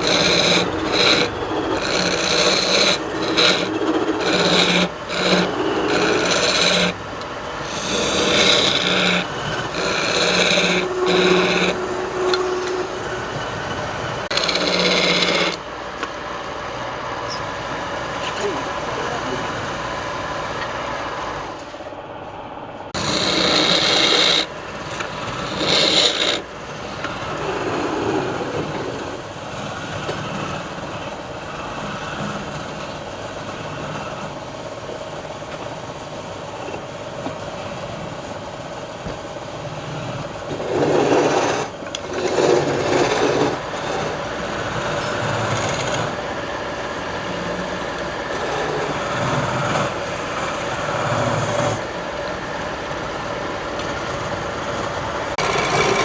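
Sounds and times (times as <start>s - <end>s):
turning tool cutting wood: 0.0s - 15.8s, 23.0s - 32.9s, 40.5s - 46.4s, 47.2s - 51.9s, 55.3s - 56.0s
wood lathe running: 0.0s - 21.6s, 22.9s - 34.5s, 39.6s - 56.0s.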